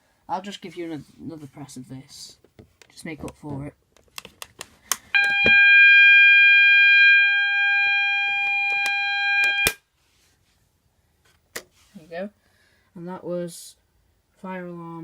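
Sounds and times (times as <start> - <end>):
fire alarm sounder tone: 5.2 - 9.8.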